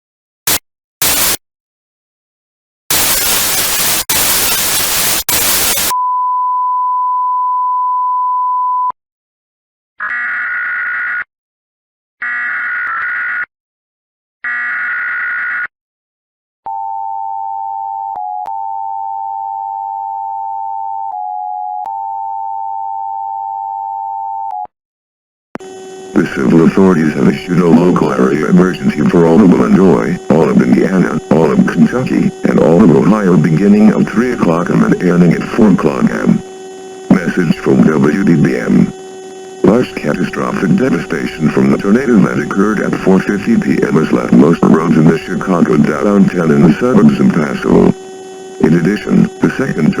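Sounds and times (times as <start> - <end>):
screeching data bursts: 0.5 - 1.4, 2.9 - 6.0, 25.6 - 50.0
static hiss: 0.5 - 1.4, 2.9 - 5.9, 25.9 - 50.0.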